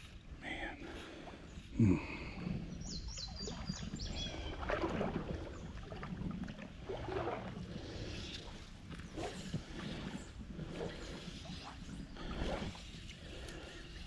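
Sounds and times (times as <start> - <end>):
creek water running: 0.0 - 14.0
bird singing: 1.4 - 4.7.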